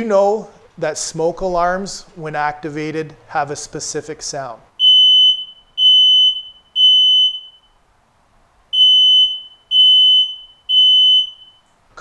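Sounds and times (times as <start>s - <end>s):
smoke alarm beeping: 4.8s - 7.8s, 8.7s - 11.7s.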